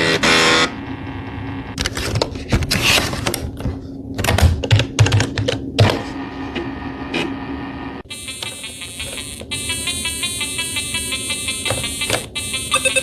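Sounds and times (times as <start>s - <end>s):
steady low hum: 0.0s - 13.0s
music: 9.5s - 13.0s.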